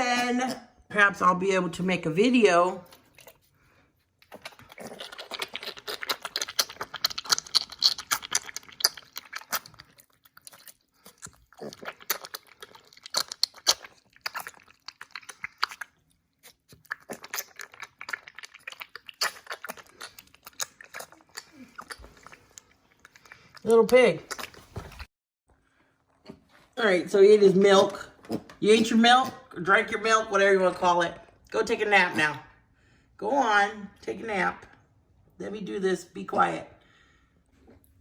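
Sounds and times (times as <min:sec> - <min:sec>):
piglet smacking and sucking: 0:02.8 - 0:25.1.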